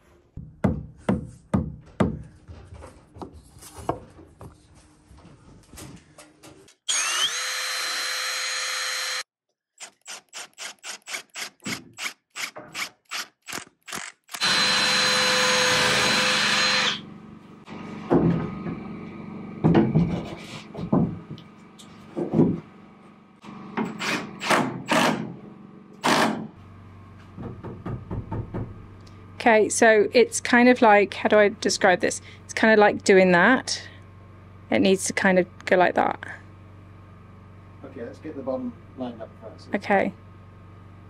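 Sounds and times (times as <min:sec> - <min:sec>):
power drill running: 0:06.9 - 0:17.2
knocks and clunks: 0:18.0 - 0:18.8, 0:19.6 - 0:21.4, 0:22.1 - 0:22.7, 0:27.2 - 0:28.8.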